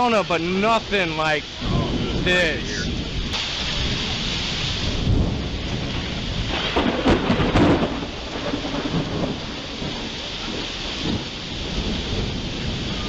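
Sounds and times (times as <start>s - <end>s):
steady rain: 0.0s - 13.0s
thunder rumbling and crackling: 0.0s - 13.0s.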